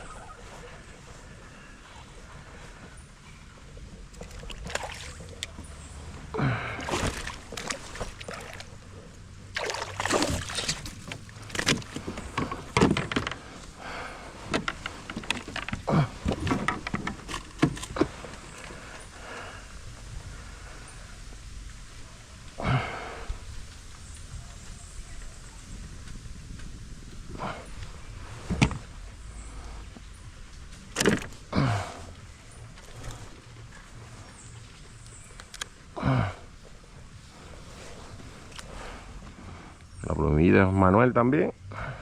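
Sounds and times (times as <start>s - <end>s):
water splashing around boat: 3.9s - 19.4s.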